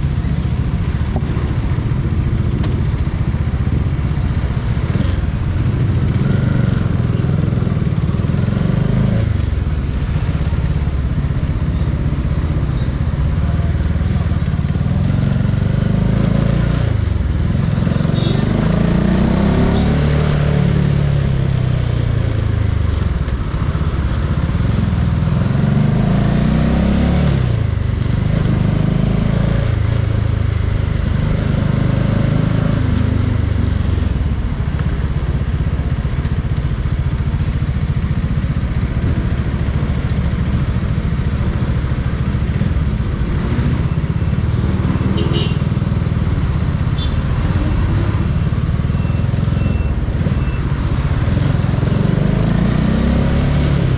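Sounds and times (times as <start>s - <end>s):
wind and road noise: 0.0s - 53.9s
motorcycle engine accelerating: 14.4s - 53.9s.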